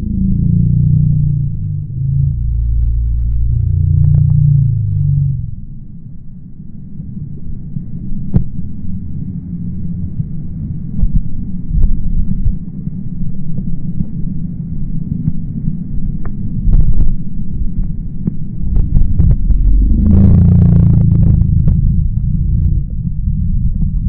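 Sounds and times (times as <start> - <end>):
low rumbling noise: 0.0 - 24.0
steady low pitched hum: 0.0 - 24.0
rush of noise: 18.7 - 24.0.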